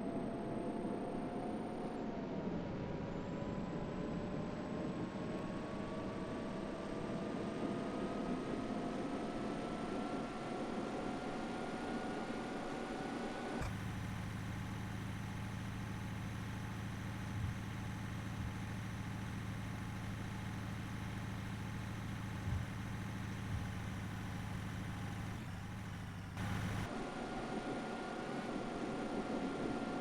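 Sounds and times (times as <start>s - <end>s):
vehicle engine running: 13.6s - 26.9s.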